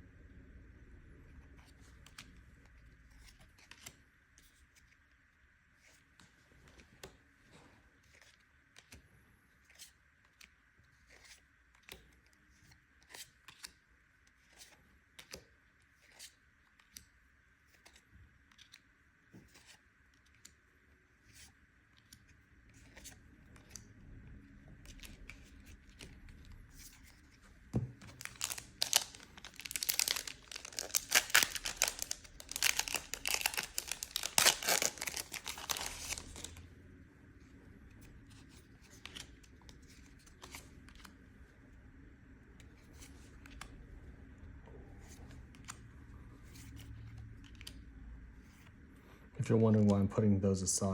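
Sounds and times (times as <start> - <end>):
foil wrapper tearing and crinkling: 28.1 - 36.6
trading cards clicking: 28.1 - 36.6.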